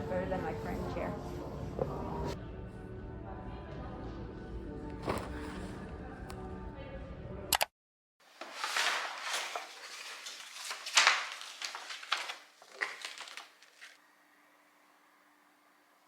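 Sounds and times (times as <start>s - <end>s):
packaging rustling and crinkling: 8.3s - 14.0s.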